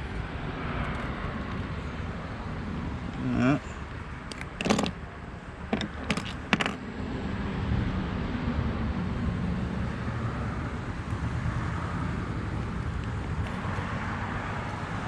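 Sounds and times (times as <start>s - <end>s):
tools clicking and knocking: 4.3s - 5.0s, 5.7s - 6.8s.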